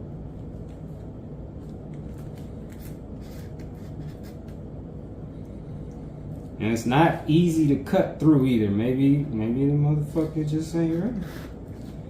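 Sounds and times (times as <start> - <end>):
steady low hum: 0.0 - 12.0
knife scraping hard fruit rind: 2.1 - 4.6, 10.8 - 12.0.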